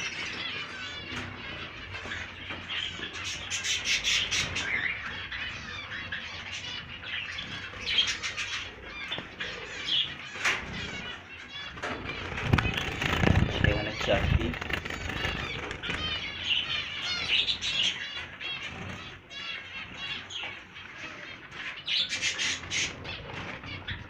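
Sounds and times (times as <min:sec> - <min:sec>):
finches chirping: 0:00.0 - 0:24.0
wings fluttering: 0:00.0 - 0:24.0.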